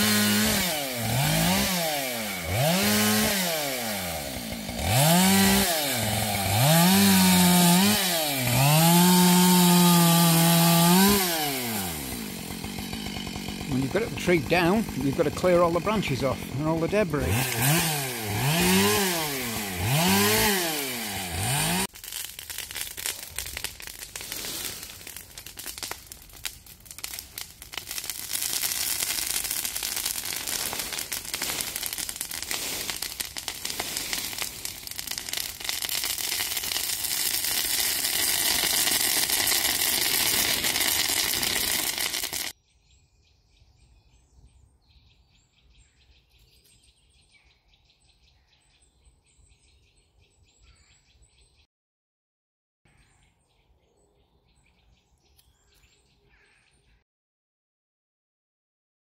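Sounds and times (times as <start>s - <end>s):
chainsaw revving: 0.0s - 42.5s
faint birdsong: 42.6s - 51.7s, 52.9s - 57.0s.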